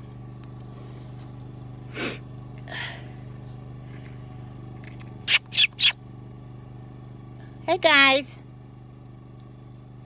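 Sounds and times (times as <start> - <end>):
puppies squeaking: 5.3 - 6.0
puppies yipping: 5.3 - 6.0.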